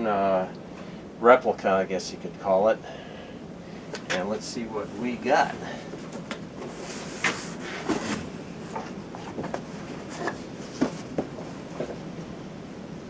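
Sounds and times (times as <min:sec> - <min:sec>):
box being opened and handled: 0:06.0 - 0:12.1.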